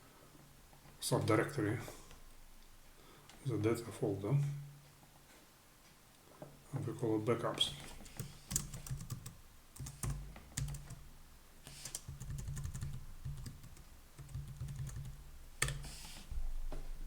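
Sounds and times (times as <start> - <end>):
keyboard typing: 7.8 - 11.1, 11.7 - 16.3.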